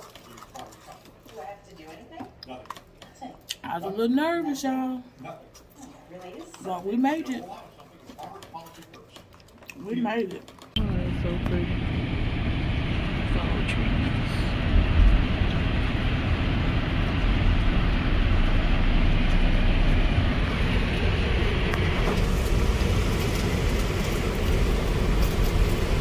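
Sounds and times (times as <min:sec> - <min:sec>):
engine and tyre road drone: 0:10.8 - 0:26.0.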